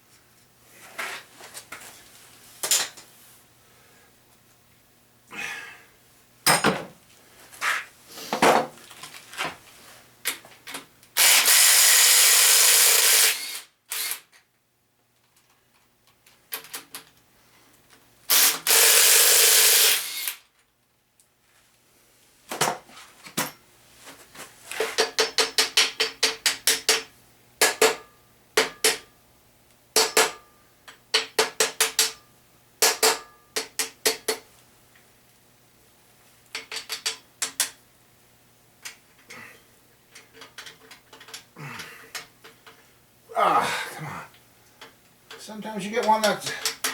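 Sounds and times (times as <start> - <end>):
power tool running: 11.2 - 14.2, 18.3 - 20.4
hand ratchet clicking: 11.2 - 14.4, 18.3 - 20.4.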